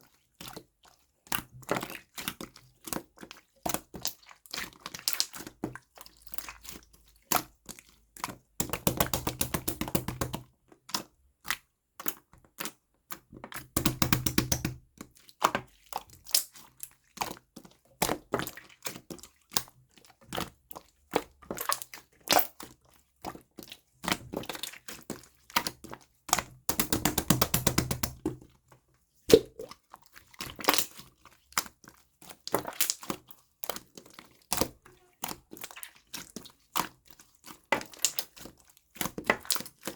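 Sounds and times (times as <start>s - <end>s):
slime clicking and popping: 13.8s - 14.8s, 29.3s - 29.7s.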